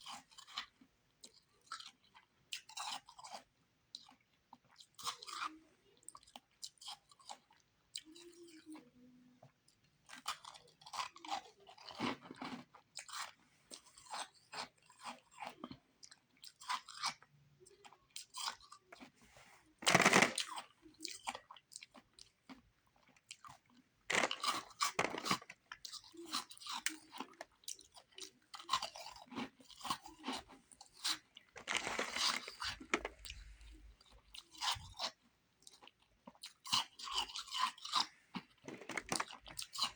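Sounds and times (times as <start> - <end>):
person crunching ice: 19.8 - 20.5, 24.1 - 25.5, 31.0 - 33.3, 38.7 - 39.9.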